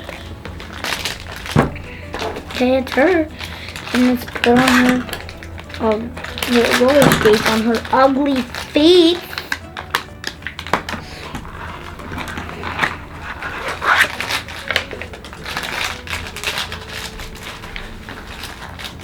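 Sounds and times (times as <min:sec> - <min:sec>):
plastic toy parts clicking: 0:00.8 - 0:13.0.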